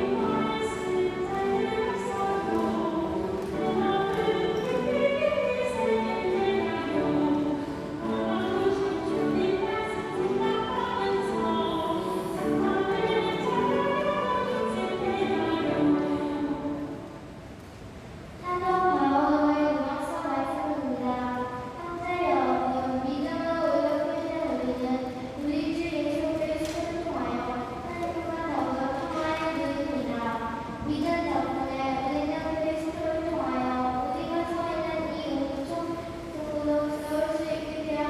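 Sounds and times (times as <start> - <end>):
choir singing: 0.0 - 16.9.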